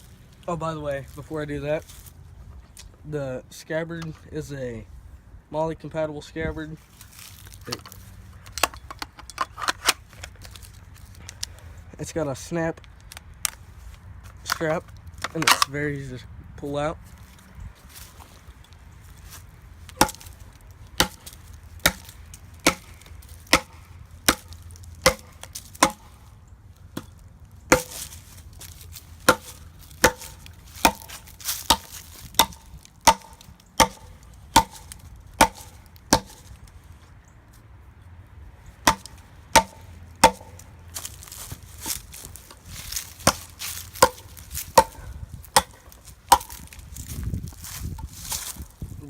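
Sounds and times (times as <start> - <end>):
tomahawk chopping wood: 19.9 - 26.3, 26.9 - 36.6, 38.8 - 46.8.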